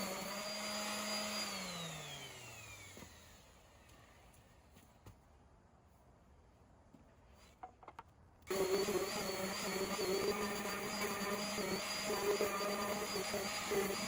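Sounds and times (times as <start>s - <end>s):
electric sander buzzing: 0.0s - 3.4s, 8.5s - 14.0s.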